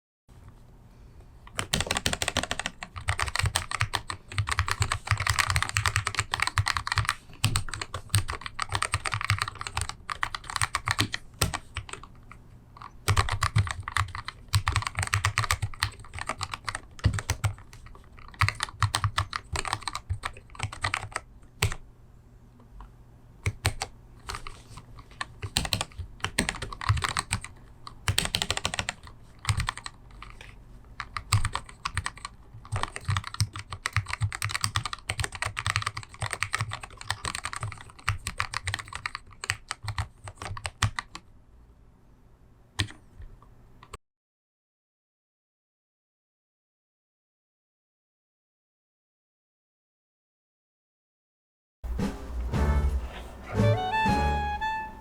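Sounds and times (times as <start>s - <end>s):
mechanical keyboard typing: 1.5s - 21.8s, 23.4s - 41.2s.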